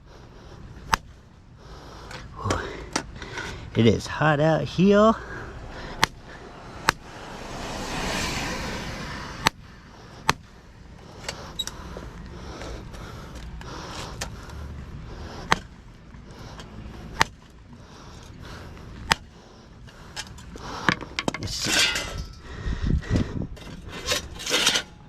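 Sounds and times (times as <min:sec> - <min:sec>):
vehicle passing: 0:03.1 - 0:21.2.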